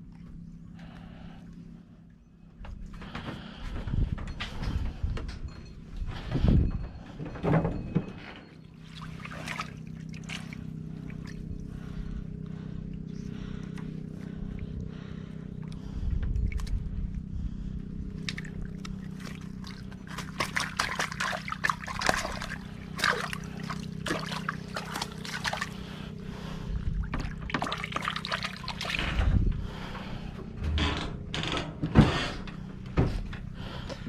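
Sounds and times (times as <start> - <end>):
steady low hum: 0.0 - 34.0
water splashing and trickling: 7.4 - 11.9, 15.6 - 17.0, 18.1 - 29.4.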